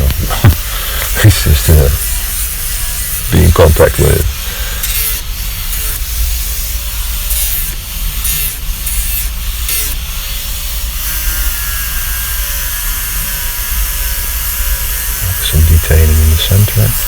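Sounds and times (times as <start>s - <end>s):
bit rasping into wood: 0.0s - 6.1s
grinder motor running: 0.0s - 17.0s
steady tool whine: 0.0s - 17.0s.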